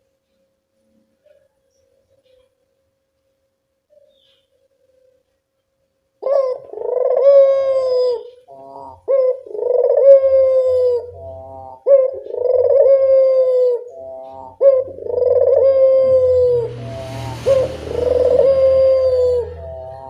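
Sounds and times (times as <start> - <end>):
dove cooing: 6.2 - 20.0.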